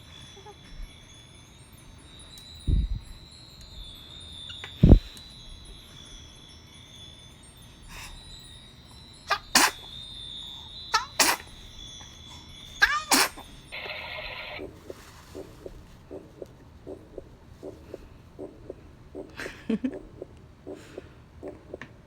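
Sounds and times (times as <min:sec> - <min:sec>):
faint tinkling: 0:00.0 - 0:15.7
person sneezing: 0:09.3 - 0:09.8, 0:11.2 - 0:11.4, 0:12.8 - 0:13.4.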